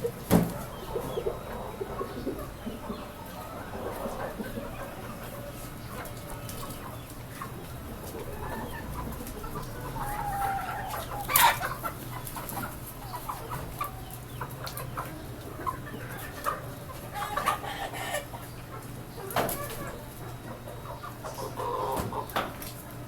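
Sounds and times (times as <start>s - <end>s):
chickens clucking: 0.0s - 23.0s
loud chicken squawk: 9.9s - 12.0s, 17.1s - 18.4s.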